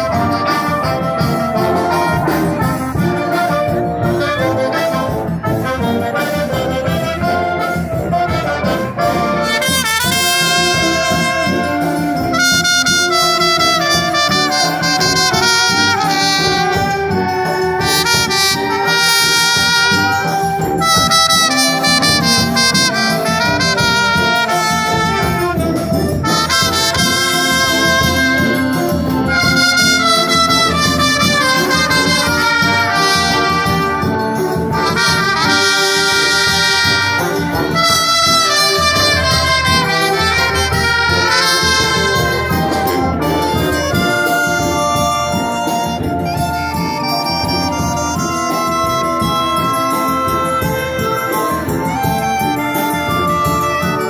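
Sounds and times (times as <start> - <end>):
wind band playing: 0.0 - 54.0.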